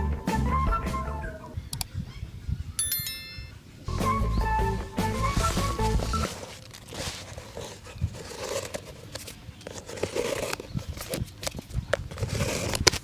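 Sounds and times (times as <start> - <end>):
soft rustle: 5.4 - 13.0.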